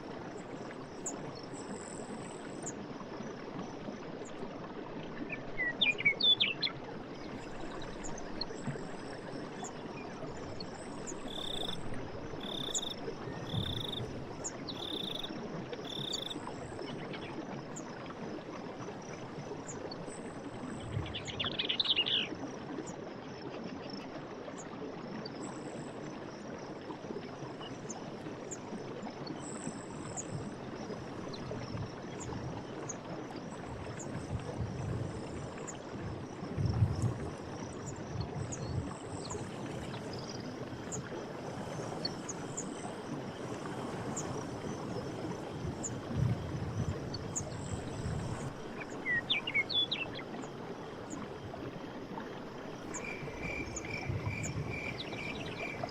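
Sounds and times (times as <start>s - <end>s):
low water sloshing: 0.0s - 55.9s
running water: 0.0s - 55.9s
faint insect chirps: 5.3s - 18.0s, 29.3s - 55.9s.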